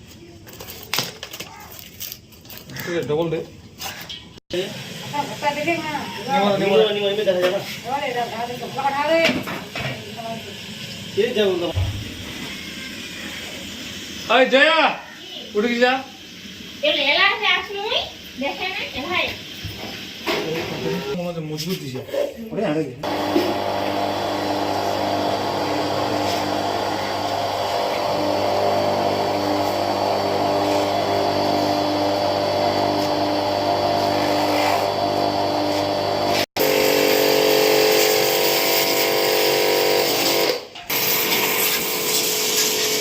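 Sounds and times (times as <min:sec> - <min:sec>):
pressure washer motor hum: 0:23.0 - 0:43.0.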